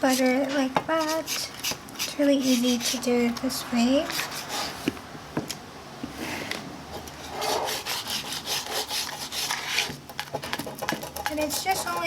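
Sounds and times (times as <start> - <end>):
butter rubbing on a pan: 7.2 - 12.0.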